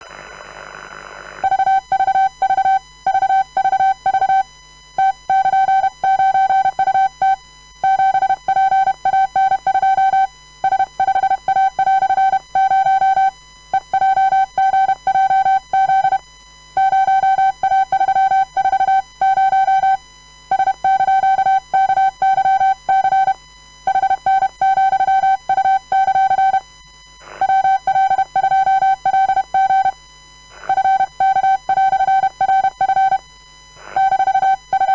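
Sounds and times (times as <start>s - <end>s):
morse code tone: 27.4s - 30.0s, 34.0s - 34.9s.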